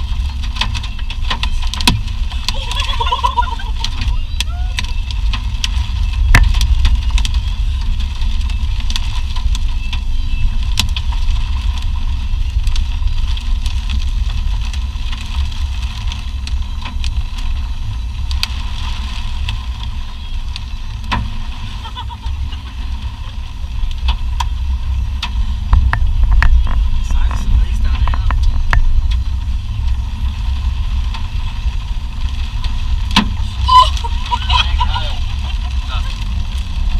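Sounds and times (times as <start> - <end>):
road and engine rumble: 0.0 - 36.9.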